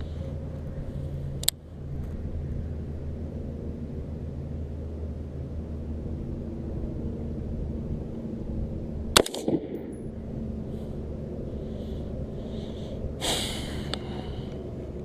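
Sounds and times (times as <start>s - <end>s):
steady low hum: 0.0s - 15.0s
gunshot with echo: 9.2s - 10.0s.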